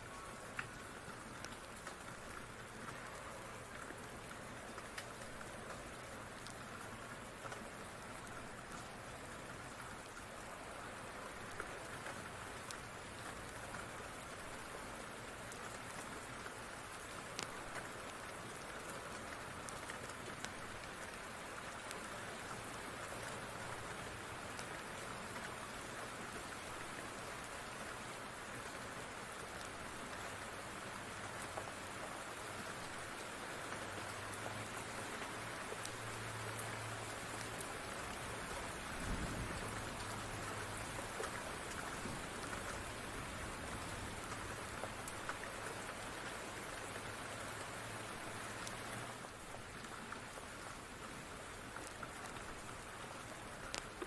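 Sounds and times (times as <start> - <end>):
steady rain falling: 0.0 - 54.0
wood fire crackling: 51.7 - 54.0.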